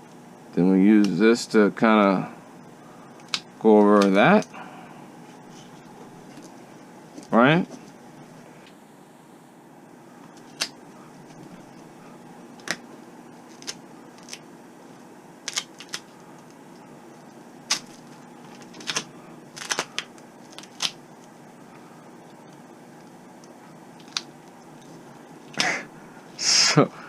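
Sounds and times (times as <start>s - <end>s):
faint steady hum: 0.0s - 27.0s
duct tape crackling: 10.2s - 21.5s, 22.2s - 25.8s.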